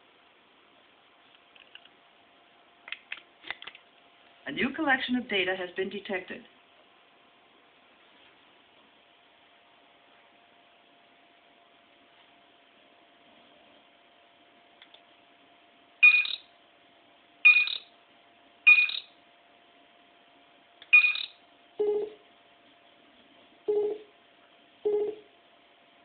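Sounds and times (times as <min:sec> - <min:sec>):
faint steady hum: 0:00.0 - 0:26.0
high-pitched computer chirps: 0:16.0 - 0:16.5, 0:17.5 - 0:17.9, 0:18.7 - 0:19.2, 0:20.9 - 0:22.2, 0:23.7 - 0:24.1
lower-pitched computer beeps: 0:16.0 - 0:16.5, 0:17.5 - 0:17.9, 0:18.7 - 0:19.2, 0:20.9 - 0:22.2, 0:24.9 - 0:25.2.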